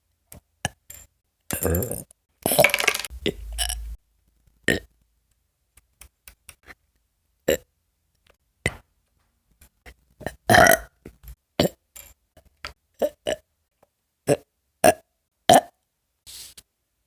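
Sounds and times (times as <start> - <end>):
person burping: 1.5 - 3.8, 10.5 - 10.9, 14.3 - 15.8.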